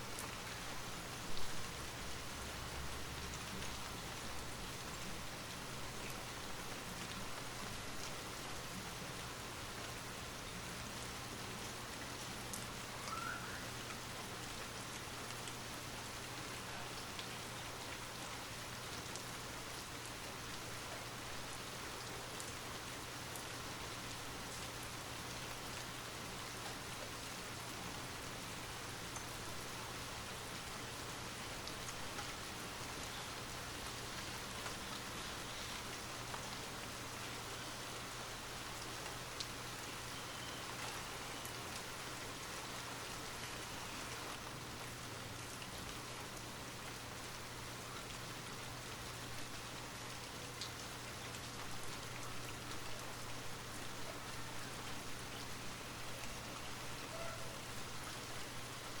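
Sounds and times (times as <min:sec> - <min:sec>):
light rain falling: 0:00.0 - 0:59.0.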